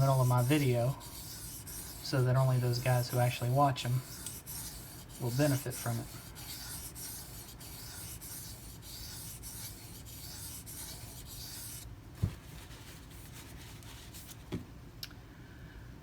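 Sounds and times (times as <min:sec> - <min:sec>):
knife stroking sharpening stone: 0:00.0 - 0:11.8.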